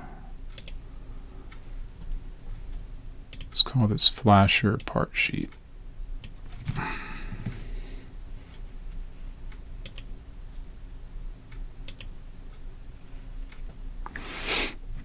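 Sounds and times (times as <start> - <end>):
low steady hum: 0.0 - 15.0
computer mouse clicks: 0.5 - 0.8, 3.3 - 3.6, 9.8 - 10.1, 11.8 - 12.1.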